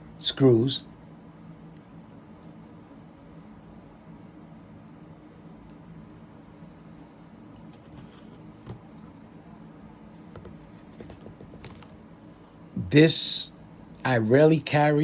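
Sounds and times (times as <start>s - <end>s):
gear clicking and tapping on table: 10.4s - 11.9s.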